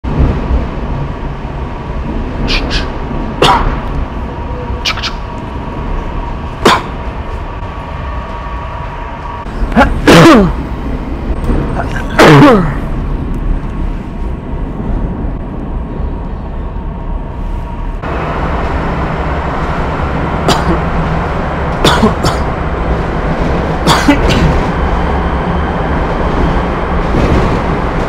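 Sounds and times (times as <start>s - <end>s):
metro train carriage rumbling: 0.0s - 28.0s.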